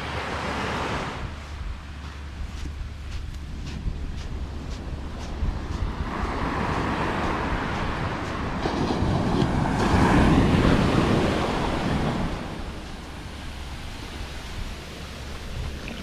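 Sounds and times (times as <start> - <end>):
wind rumbling on microphone: 0.0 - 16.0
wave breaking on beach: 5.8 - 16.0.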